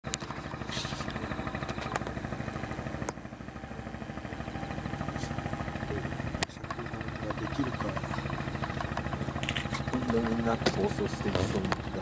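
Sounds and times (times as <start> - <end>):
boat engine idling: 0.1 - 12.0.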